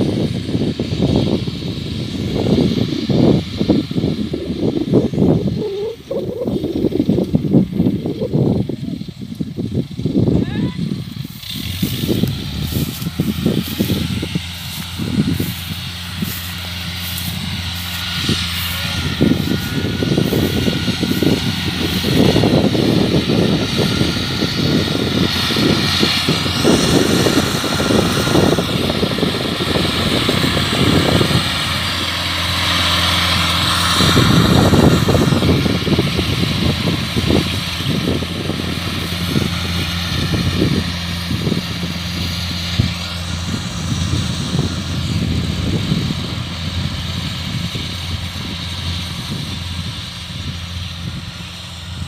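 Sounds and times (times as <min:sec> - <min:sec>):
combine harvester engine hum: 0:00.0 - 0:52.0.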